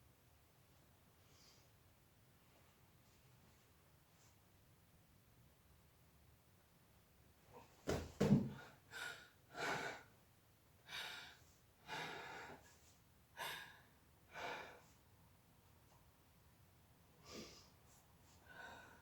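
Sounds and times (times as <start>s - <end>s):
woman breathing heavily: 8.4s - 10.2s, 10.8s - 15.1s, 17.2s - 19.0s.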